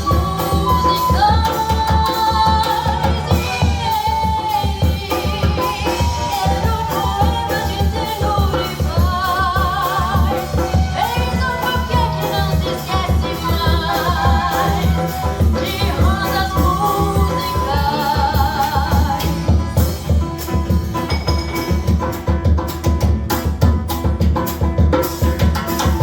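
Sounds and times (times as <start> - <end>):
flute: 0.0 - 20.1
woman singing: 0.0 - 21.7
hand percussion: 0.0 - 26.0
nylon-string guitar: 0.0 - 26.0.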